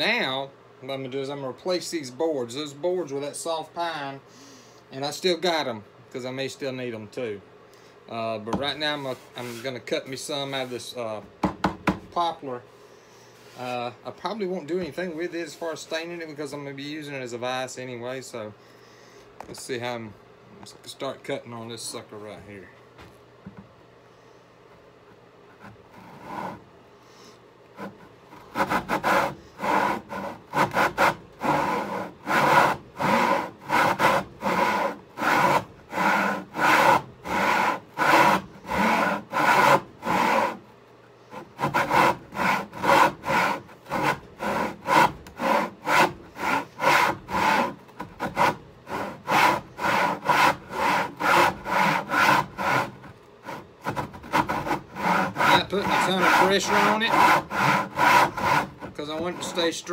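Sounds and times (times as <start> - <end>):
hand saw cutting wood: 25.5 - 26.7, 27.8 - 40.6, 41.3 - 59.9.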